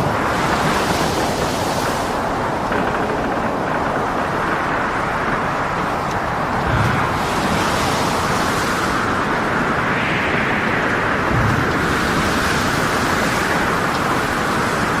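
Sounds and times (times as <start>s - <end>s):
heavy waves: 0.0s - 15.0s
rushing wind: 0.0s - 15.0s.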